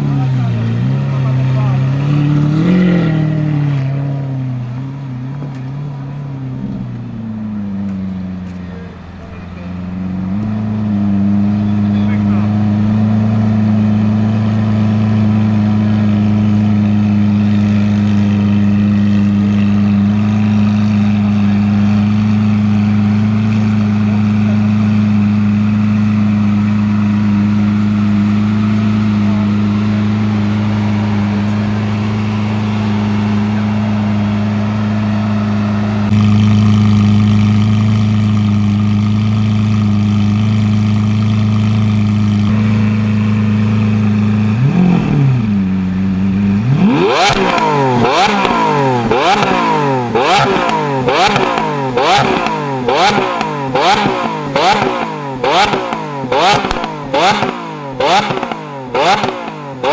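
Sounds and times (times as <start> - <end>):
car engine idling: 0.0 - 59.9.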